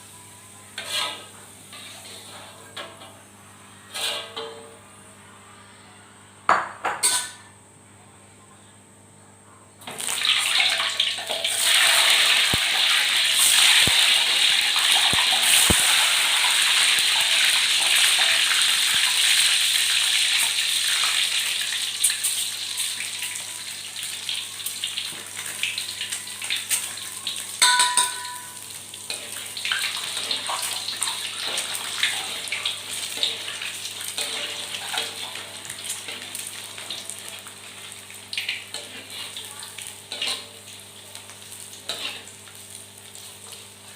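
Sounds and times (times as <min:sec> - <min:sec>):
oil crackles and pops: 0:09.9 - 0:19.2
food sizzling in hot oil: 0:09.9 - 0:43.9.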